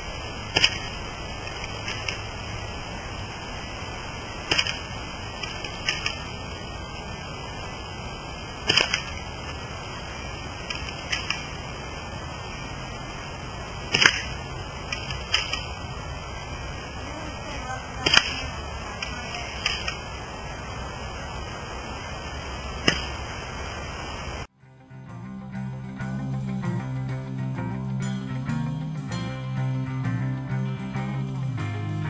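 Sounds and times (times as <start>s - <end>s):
airsoft rifle shots: 0.0s - 7.7s, 8.5s - 12.3s, 13.8s - 16.6s, 17.2s - 20.2s, 22.8s - 23.3s.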